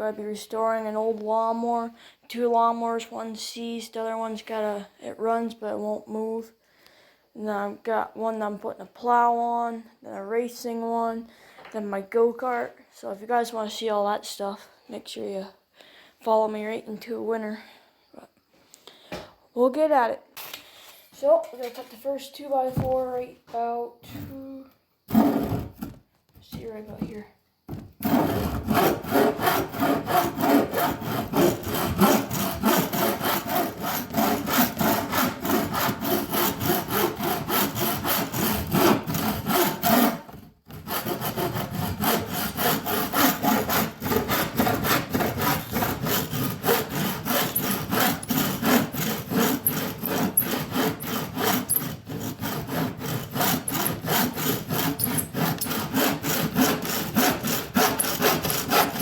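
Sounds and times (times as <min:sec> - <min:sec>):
handsaw cutting wood: 0:25.1 - 0:26.0, 0:28.0 - 0:59.0.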